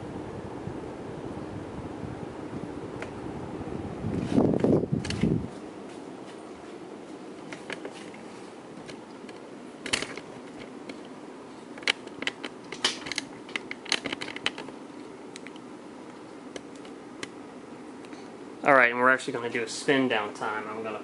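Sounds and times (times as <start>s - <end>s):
ceiling fan whirring: 0.0s - 21.0s.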